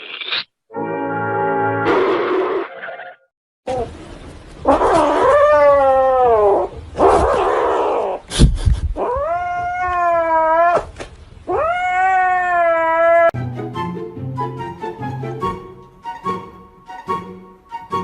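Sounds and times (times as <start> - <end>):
cat yowling: 4.7 - 8.2, 9.0 - 10.9, 11.5 - 13.4.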